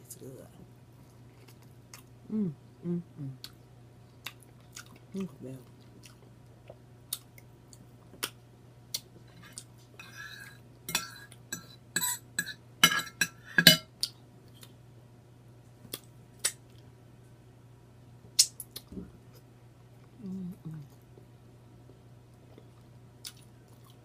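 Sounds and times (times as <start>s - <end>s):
cutlery clinking on a plate: 10.0s - 13.9s.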